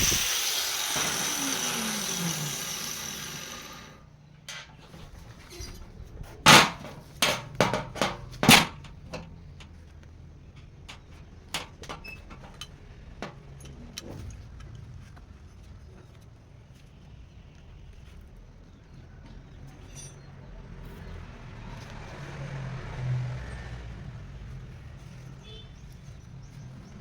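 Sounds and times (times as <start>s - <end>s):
machine running down: 0.0s - 4.0s
metallic knocks and clanks: 6.4s - 9.8s.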